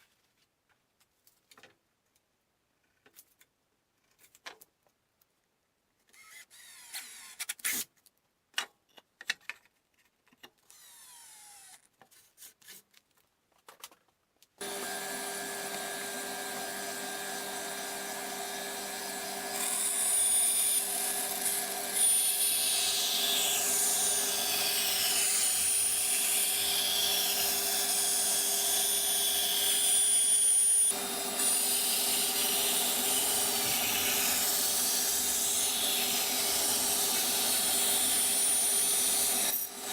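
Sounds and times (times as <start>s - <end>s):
power tool running with whine: 14.6s - 39.9s.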